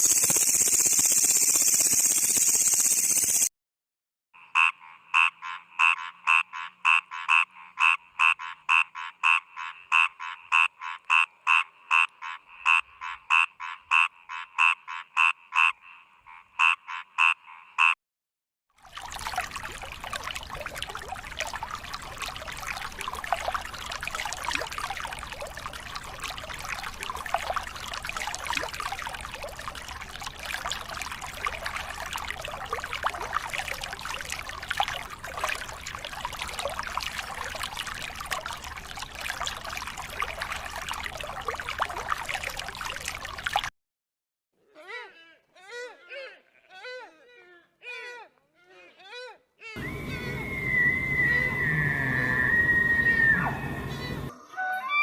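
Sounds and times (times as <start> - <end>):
trickling water: 18.7 - 43.7.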